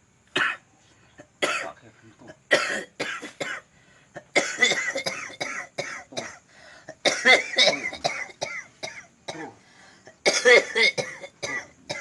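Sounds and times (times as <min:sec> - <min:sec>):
man coughing: 0:01.4 - 0:03.6, 0:04.2 - 0:06.4, 0:07.0 - 0:09.6, 0:10.2 - 0:12.0.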